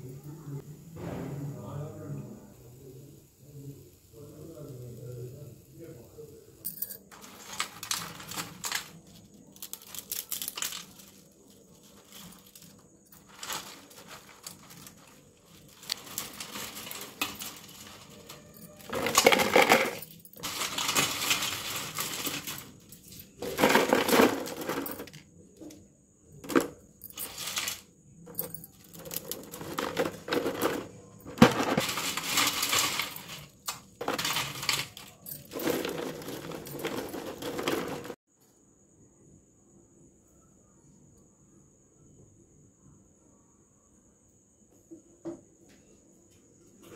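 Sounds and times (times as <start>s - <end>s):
fried snacks rattling in container: 7.1s - 25.2s, 26.4s - 38.2s.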